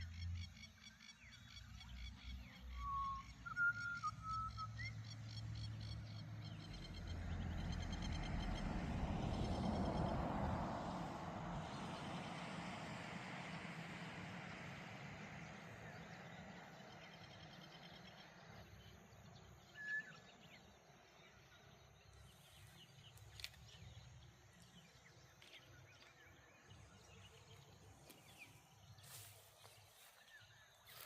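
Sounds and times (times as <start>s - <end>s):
vehicle passing: 5.2s - 18.8s.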